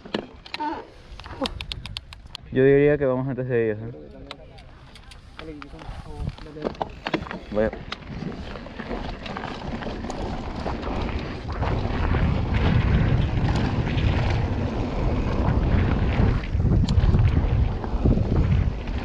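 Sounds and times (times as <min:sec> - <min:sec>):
wind buffeting microphone: 0:00.0 - 0:19.0
bike tyre rumble on dirt trail: 0:04.8 - 0:19.0.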